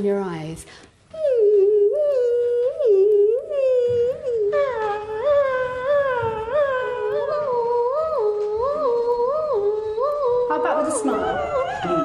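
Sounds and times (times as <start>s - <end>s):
choir singing wordless swooping: 6.5s - 12.0s.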